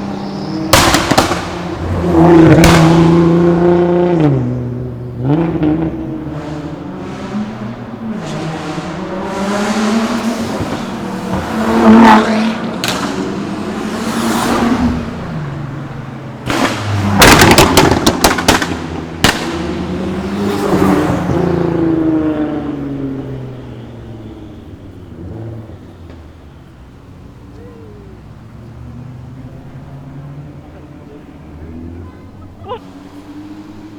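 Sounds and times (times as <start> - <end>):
car engines revving: 0.0 - 33.9
exhaust pops and crackles: 0.1 - 3.6, 10.1 - 14.7, 15.6 - 21.4.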